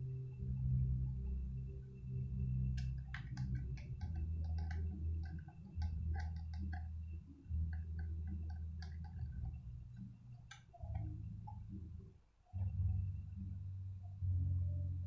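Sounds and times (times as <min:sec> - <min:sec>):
steady low hum: 0:00.0 - 0:15.0
screwdriver clicking on small parts: 0:02.8 - 0:06.9.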